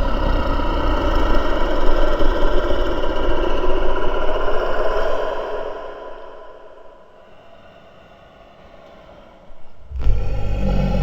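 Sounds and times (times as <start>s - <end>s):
monster roar: 9.9s - 11.0s.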